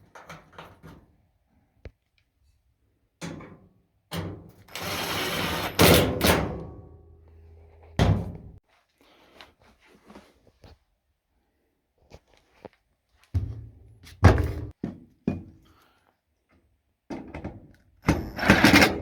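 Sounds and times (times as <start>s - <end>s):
dryer door thuds and clunks: 8.0s - 8.6s.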